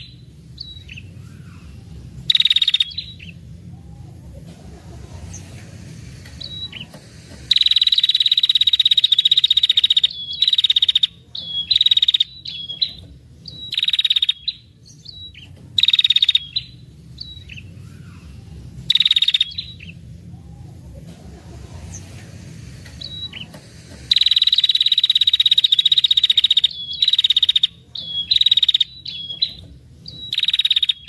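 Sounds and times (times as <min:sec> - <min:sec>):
bird chip notes: 0:00.0 - 0:31.0
bird rattling trills: 0:02.3 - 0:03.4, 0:04.9 - 0:17.5, 0:18.9 - 0:20.0, 0:21.8 - 0:31.0.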